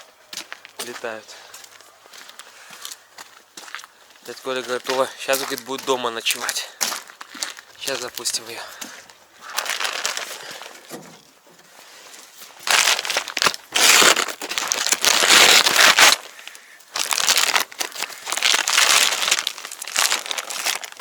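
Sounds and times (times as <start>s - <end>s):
straw rustling underfoot: 0.3s - 21.0s.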